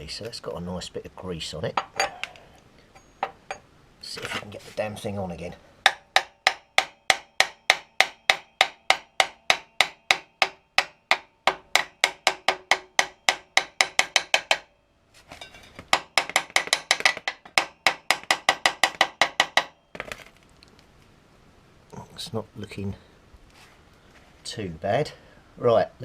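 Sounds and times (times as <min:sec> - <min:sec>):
hammer tapping metal: 0:05.8 - 0:14.7, 0:15.5 - 0:19.8.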